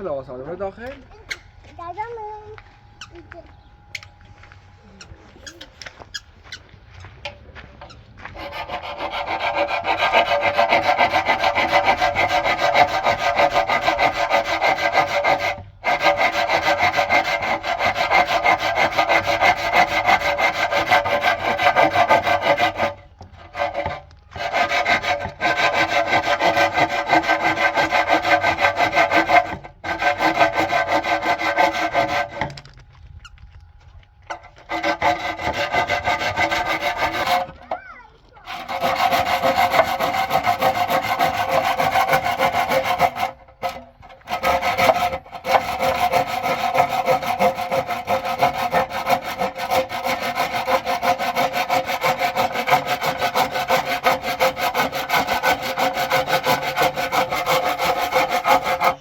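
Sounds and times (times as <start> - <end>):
fast scraping: 5.0 - 33.5, 34.3 - 59.0.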